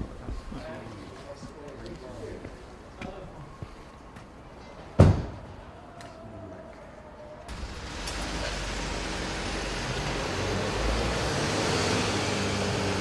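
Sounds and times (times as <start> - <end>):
motor vehicle engine running: 7.5 - 13.0.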